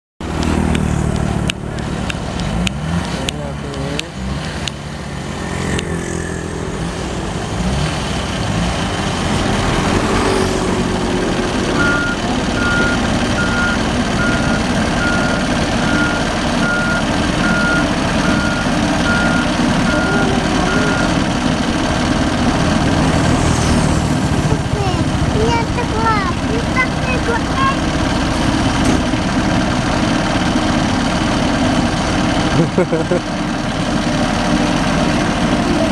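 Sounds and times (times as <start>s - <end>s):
diesel engine running: 0.2s - 35.9s
reversing alarm beeping: 11.8s - 21.3s.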